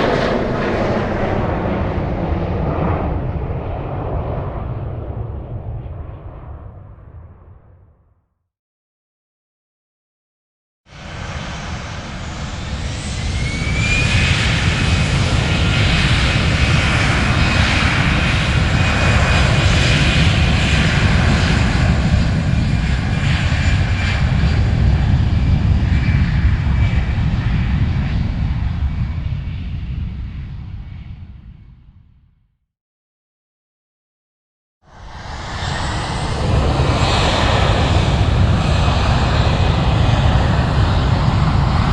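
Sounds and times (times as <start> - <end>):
engine whine: 0.0 - 7.8, 11.0 - 31.6, 34.9 - 41.9
airplane engine rumbling: 0.0 - 8.1, 10.9 - 32.4, 34.8 - 41.9.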